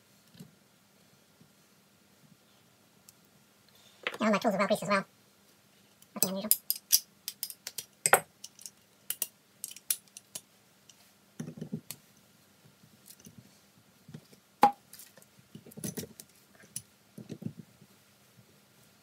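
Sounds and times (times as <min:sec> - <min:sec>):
metal tools clicking and clinking: 0:06.2 - 0:10.4.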